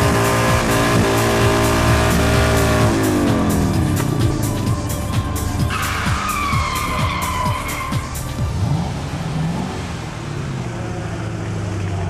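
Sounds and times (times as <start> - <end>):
music with a steady beat: 0.0 - 8.8
low engine hum: 0.0 - 12.0
tyres squealing in a skid: 5.6 - 9.6.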